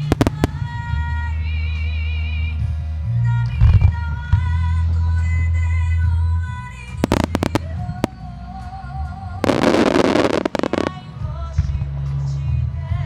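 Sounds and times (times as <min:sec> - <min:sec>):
fireworks bangs and crackling: 0:00.0 - 0:01.3, 0:07.0 - 0:11.8
song playing: 0:07.0 - 0:11.2.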